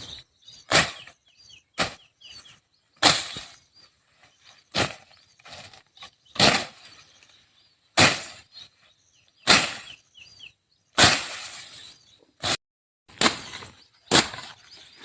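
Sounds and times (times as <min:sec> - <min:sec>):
faint bird chirps: 0:00.0 - 0:12.3
tool chopping into wood: 0:03.0 - 0:03.4, 0:11.0 - 0:11.6, 0:12.4 - 0:14.6.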